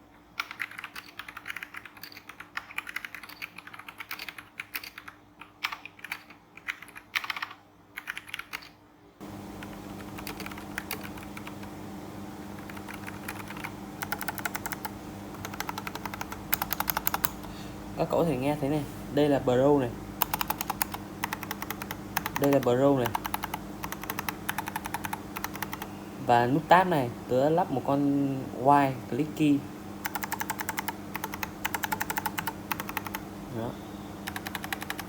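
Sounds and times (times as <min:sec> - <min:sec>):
mechanical keyboard typing: 0:00.4 - 0:08.8, 0:09.6 - 0:11.7, 0:12.6 - 0:17.5, 0:20.2 - 0:25.9, 0:30.0 - 0:33.2, 0:34.2 - 0:35.0
steady low hum: 0:09.2 - 0:35.0.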